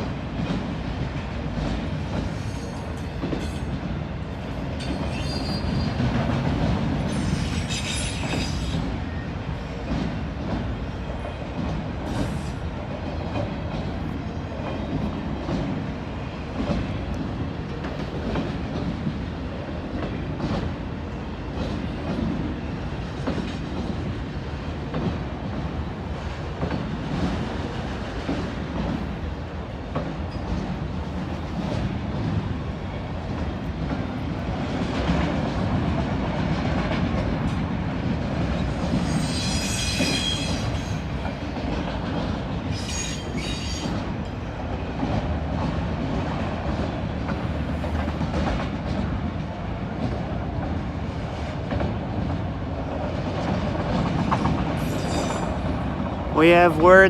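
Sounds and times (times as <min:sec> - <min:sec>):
freight train rumbling past: 0:00.0 - 0:57.0
high wheel squeal: 0:05.0 - 0:05.9, 0:39.0 - 0:41.0, 0:42.7 - 0:43.9, 0:54.8 - 0:55.6.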